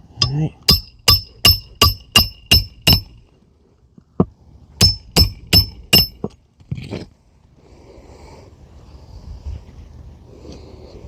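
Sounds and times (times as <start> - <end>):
hammer striking metal tool: 0.2 - 3.2, 4.8 - 6.3.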